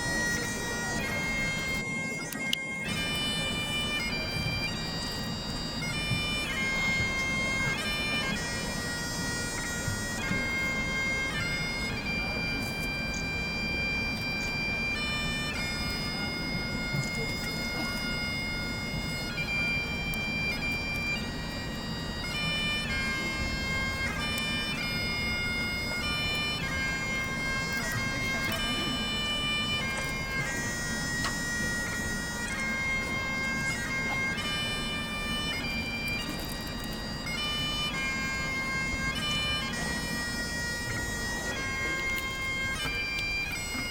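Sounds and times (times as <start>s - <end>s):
bagpipe drone: 0.0s - 43.9s
bagpipe playing slow tune: 0.0s - 43.9s.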